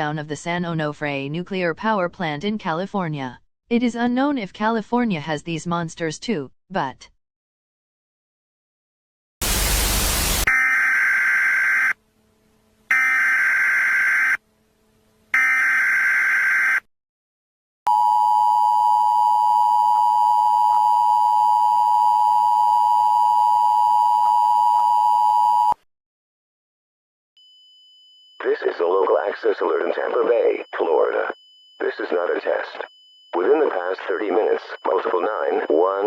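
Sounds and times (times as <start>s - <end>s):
static burst: 9.4s - 10.5s
digital data tones: 28.4s - 36.0s.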